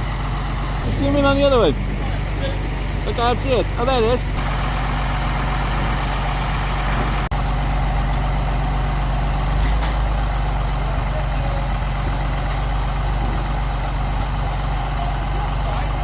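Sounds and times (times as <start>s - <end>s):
heavy engine humming: 0.0s - 16.0s.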